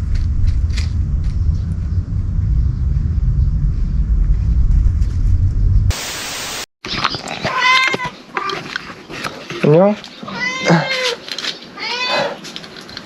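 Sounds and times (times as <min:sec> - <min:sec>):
steady low rumble: 0:00.0 - 0:06.6
burst of hiss: 0:05.9 - 0:06.7
cat meowing: 0:07.4 - 0:08.6, 0:10.2 - 0:11.2, 0:11.8 - 0:12.4.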